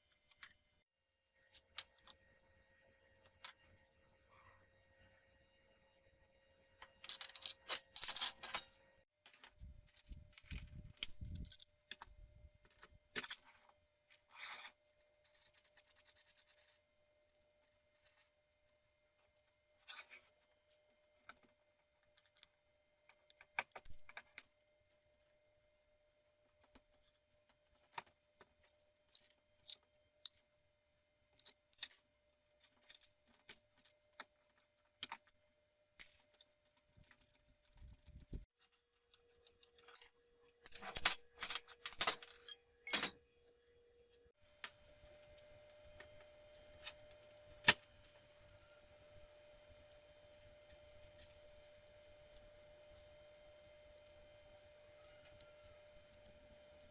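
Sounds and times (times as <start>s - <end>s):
metal parts clinking: 6.9s - 8.8s, 9.8s - 12.1s, 31.4s - 32.0s, 36.0s - 43.2s.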